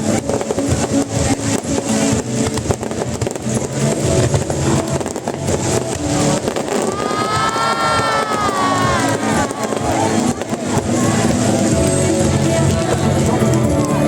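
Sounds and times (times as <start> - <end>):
fireworks crackling: 0.0 - 14.0
firework whistle: 0.2 - 12.0.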